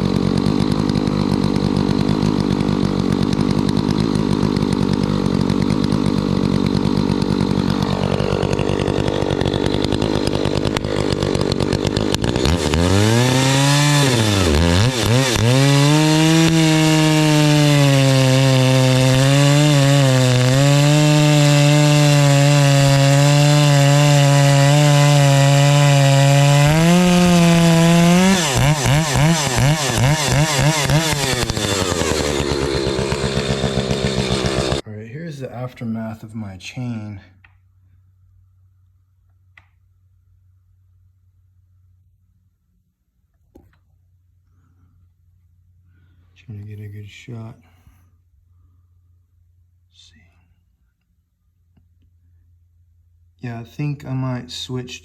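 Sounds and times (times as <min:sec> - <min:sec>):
chainsaw cutting hardwood: 0:00.0 - 0:34.8.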